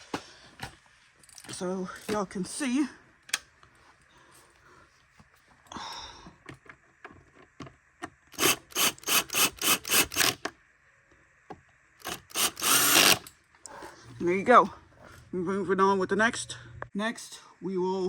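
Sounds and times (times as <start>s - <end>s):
screwdriver rasping and creaking: 8.3s - 10.5s, 12.0s - 13.4s.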